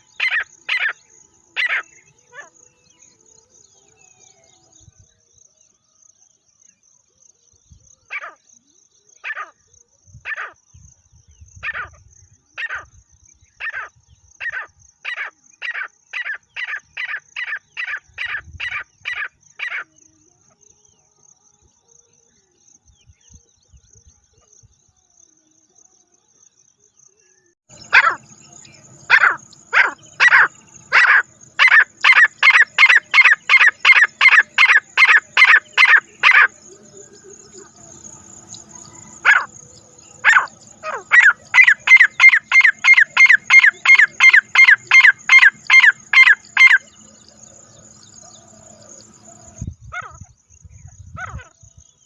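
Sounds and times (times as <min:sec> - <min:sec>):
francolin calling: 0:00.0 - 0:05.0, 0:27.7 - 0:52.0.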